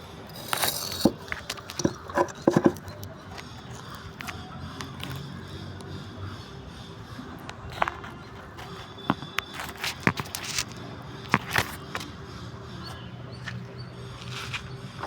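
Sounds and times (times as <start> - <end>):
sharp knocks and clanks: 0.3 - 3.4.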